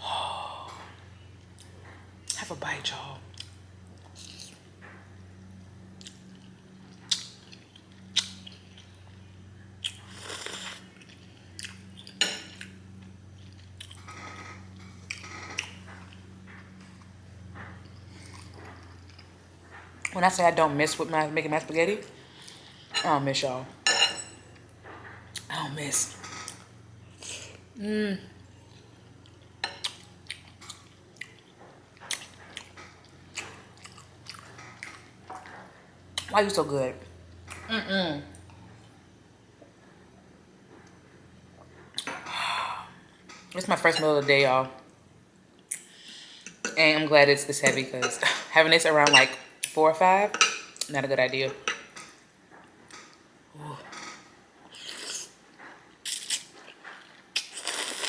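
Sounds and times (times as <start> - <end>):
low steady hum: 0.0 - 58.0
close-up chewing: 6.0 - 20.2, 28.6 - 35.5
wet chewing with smacks: 28.7 - 35.1
mouth clicks and smacks: 57.3 - 58.0.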